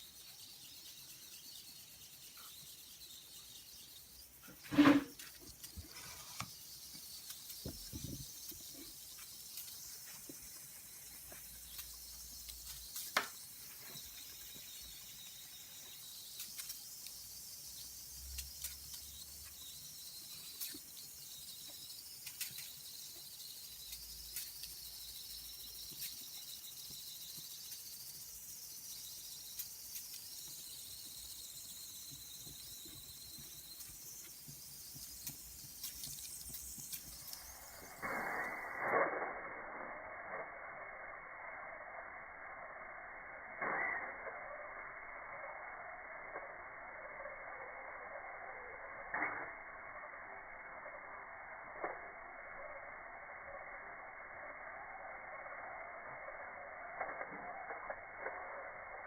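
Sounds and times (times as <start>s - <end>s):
small ticks and crackles: 0.0s - 39.0s.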